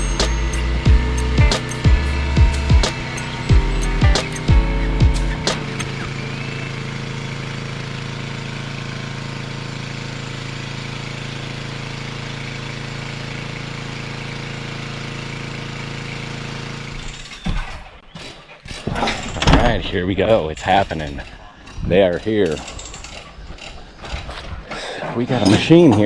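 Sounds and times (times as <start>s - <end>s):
engine running steadily: 0.0s - 17.2s.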